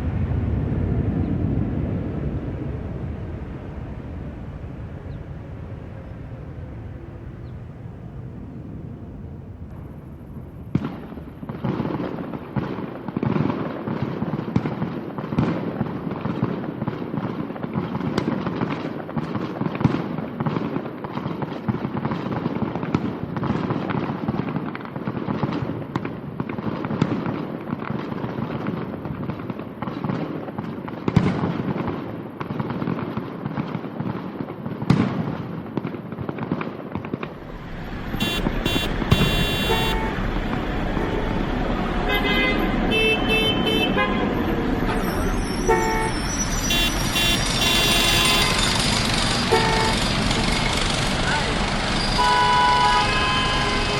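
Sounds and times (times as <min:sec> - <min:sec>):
fireworks bangs and crackling: 0:00.0 - 0:53.9
car horn blasts: 0:37.4 - 0:48.7, 0:49.5 - 0:50.1, 0:52.2 - 0:53.9.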